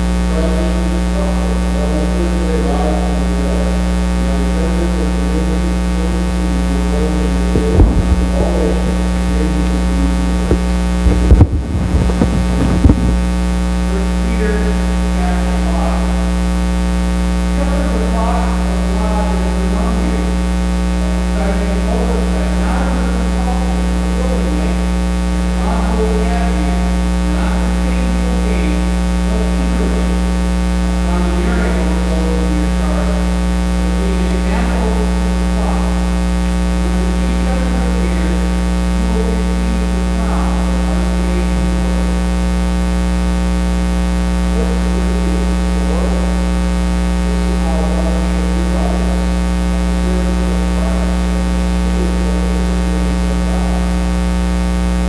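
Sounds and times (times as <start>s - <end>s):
electrical mains hum: 0.0s - 55.0s
faint distant voice: 4.3s - 13.2s.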